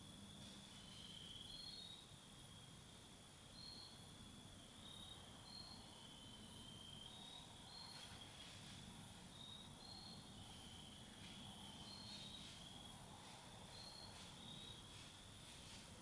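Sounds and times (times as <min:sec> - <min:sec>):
crickets trilling and chirping: 0:00.8 - 0:02.7, 0:09.3 - 0:15.1.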